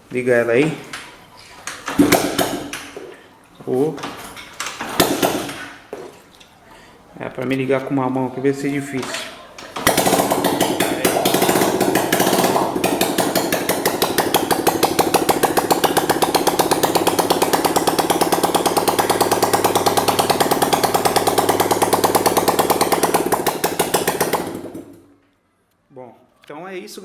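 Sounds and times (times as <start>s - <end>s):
motorcycle engine idling: 9.6s - 25.1s.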